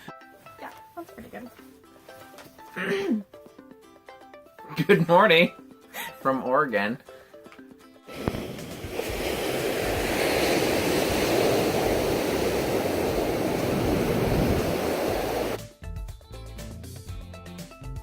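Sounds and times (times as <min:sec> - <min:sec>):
music: 0:00.0 - 0:18.0
waves breaking on shore: 0:08.1 - 0:15.6.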